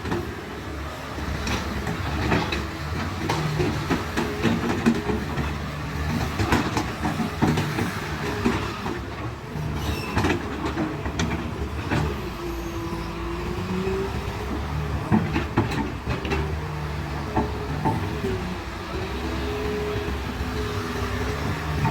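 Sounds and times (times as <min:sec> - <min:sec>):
metallic clanks from tracks: 0:01.3 - 0:13.4, 0:14.3 - 0:21.9
diesel engine running: 0:10.4 - 0:21.9.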